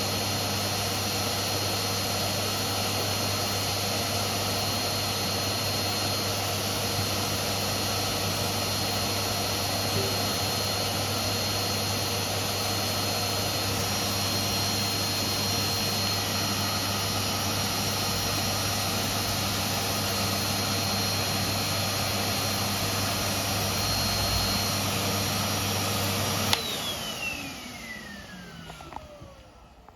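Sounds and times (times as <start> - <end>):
vacuum cleaner running: 0.0 - 29.9.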